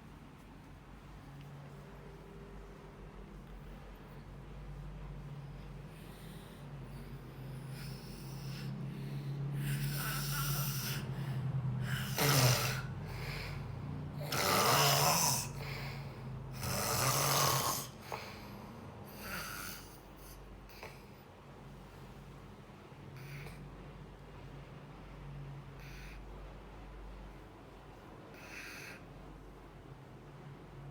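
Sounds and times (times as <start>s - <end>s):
person snoring: 7.6s - 18.5s.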